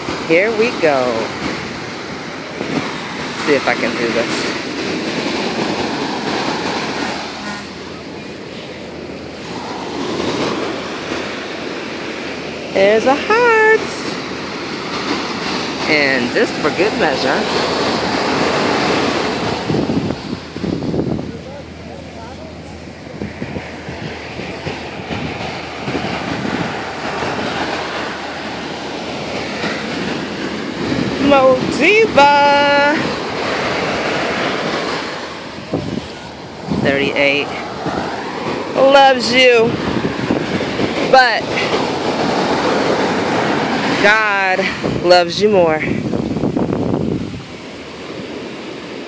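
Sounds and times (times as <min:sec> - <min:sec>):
ocean surf washing in: 0:00.0 - 0:49.0.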